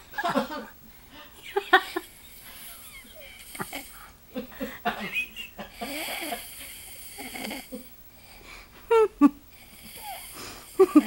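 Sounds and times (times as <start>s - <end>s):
person snoring: 2.4s - 4.1s, 5.7s - 7.9s, 9.5s - 11.0s
loud snorts: 5.8s - 7.8s.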